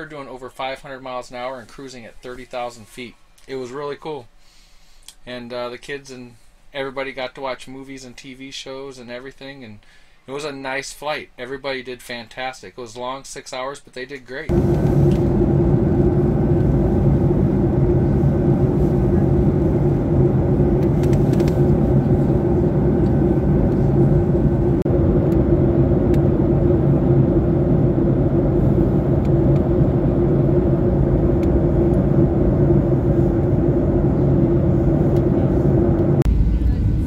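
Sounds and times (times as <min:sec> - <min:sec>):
jet airliner cabin drone: 0:14.5 - 0:37.0.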